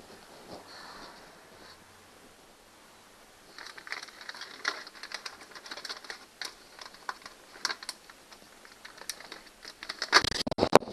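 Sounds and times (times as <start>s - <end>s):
small hard objects clicking: 3.5s - 10.9s.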